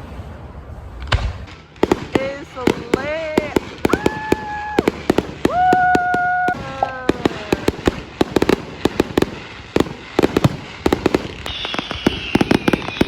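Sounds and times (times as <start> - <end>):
fireworks crackling and banging: 1.0 - 13.0
high falling whistle: 11.2 - 13.0.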